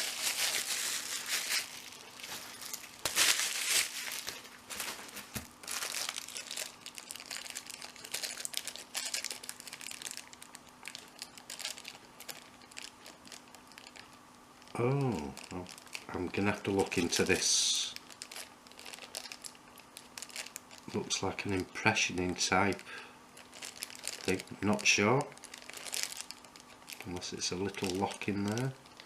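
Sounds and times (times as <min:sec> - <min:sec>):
packaging crinkling: 0:00.0 - 0:29.0.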